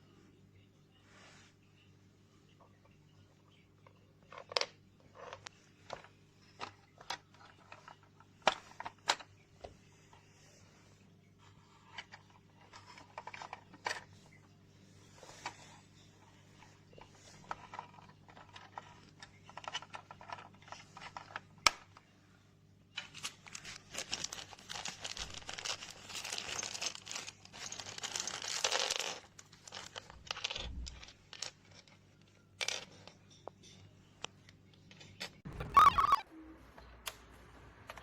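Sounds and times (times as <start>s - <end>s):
faint low hum: 0.0s - 24.6s
plastic packaging crinkling: 23.1s - 31.5s.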